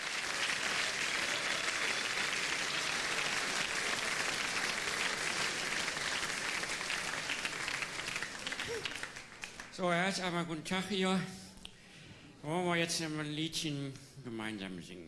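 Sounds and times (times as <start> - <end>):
audience applauding: 0.0 - 9.8.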